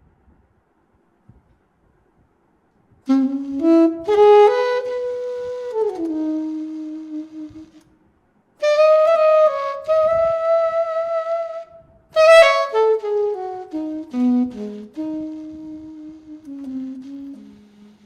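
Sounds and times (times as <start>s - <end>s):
alto saxophone notes: 3.1s - 7.9s, 8.6s - 18.0s.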